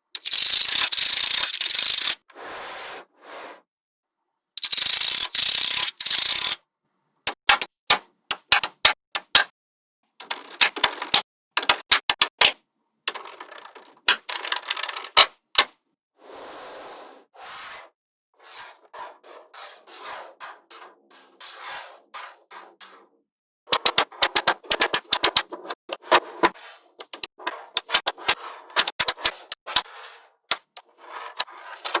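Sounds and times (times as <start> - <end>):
magnetic balls snapping together: 7.3 - 9.5, 23.7 - 29.9, 30.5 - 30.8
balls rattling and rubbing: 10.3 - 11.2, 13.1 - 15.4, 23.7 - 32.0.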